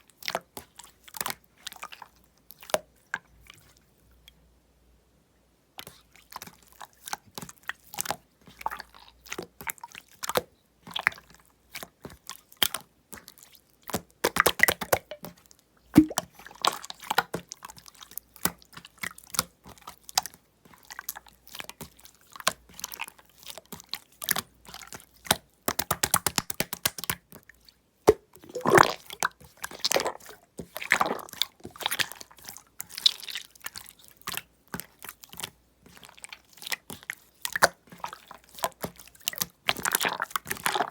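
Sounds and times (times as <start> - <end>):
slime squished by hand: 16.0 - 16.4, 28.1 - 34.9, 39.2 - 40.9.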